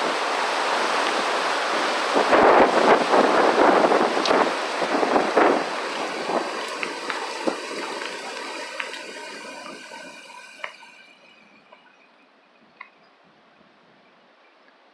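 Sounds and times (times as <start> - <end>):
storm wind rushing: 0.0 - 10.6.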